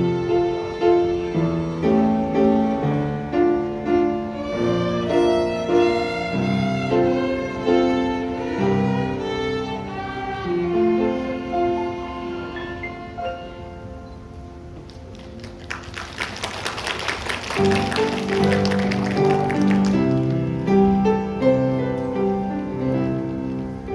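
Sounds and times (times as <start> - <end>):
violins playing a melody: 0.0 - 13.6, 17.8 - 23.9.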